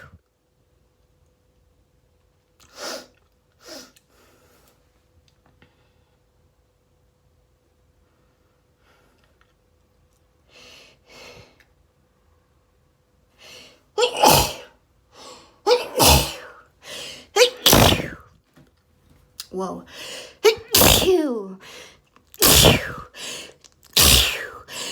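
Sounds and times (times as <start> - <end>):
person sneezing: 14.0 - 14.8, 15.7 - 18.2, 19.9 - 21.8, 22.4 - 24.9
sharp intake of breath: 15.2 - 18.2, 19.9 - 24.9.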